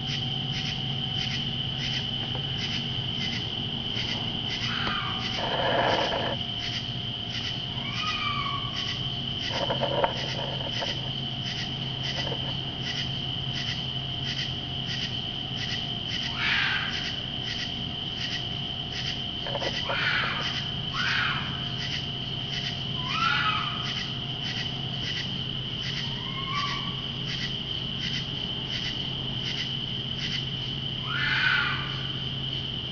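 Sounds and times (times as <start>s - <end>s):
crickets chirping: 0.0s - 32.9s
animal screams: 4.0s - 6.4s, 7.4s - 12.5s, 16.1s - 17.2s, 19.5s - 22.0s, 23.0s - 24.1s, 25.9s - 27.1s, 31.0s - 32.2s.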